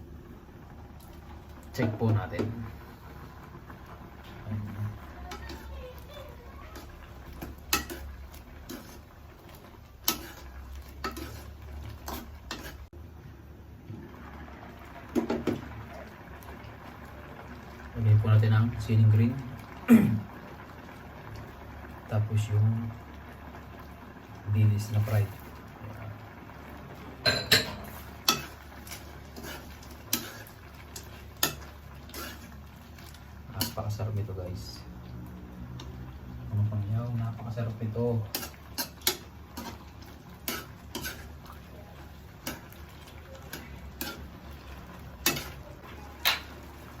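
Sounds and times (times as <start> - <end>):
metal spoon clinking on pot: 27.2 - 28.6, 45.2 - 45.6.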